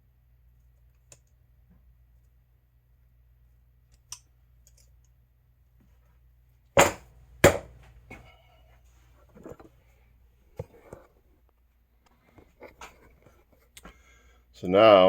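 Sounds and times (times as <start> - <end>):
sharp metal knocks: 6.8 - 7.7.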